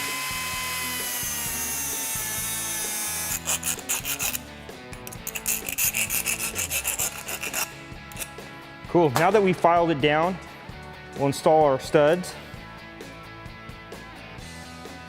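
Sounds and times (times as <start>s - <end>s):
high-speed power tool whining: 0.0s - 4.4s
file rasping on metal: 1.2s - 8.4s.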